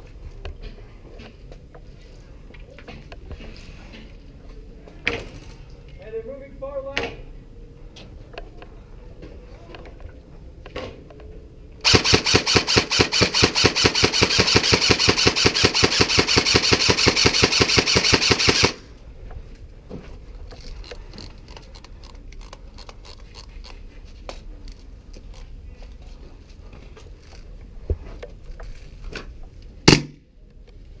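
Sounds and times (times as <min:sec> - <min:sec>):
airsoft gun firing full auto: 0:11.8 - 0:18.9.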